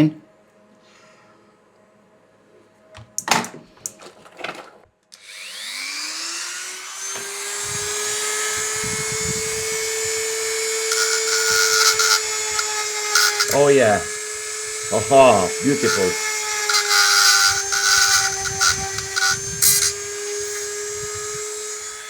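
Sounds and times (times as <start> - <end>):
rotary tool whine: 5.2 - 22.0.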